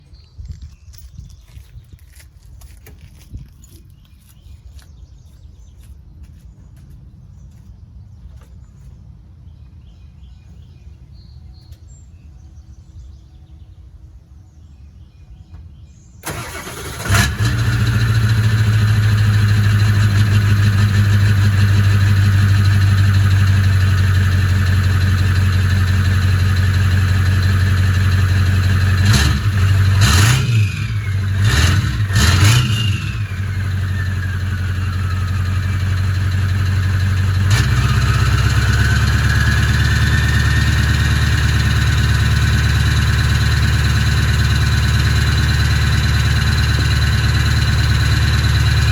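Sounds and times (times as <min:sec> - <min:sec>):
low steady rumble: 0:05.5 - 0:48.9
diesel engine cranking and starting: 0:16.2 - 0:48.9
diesel engine idling: 0:16.2 - 0:48.9
engine revving: 0:16.2 - 0:48.9.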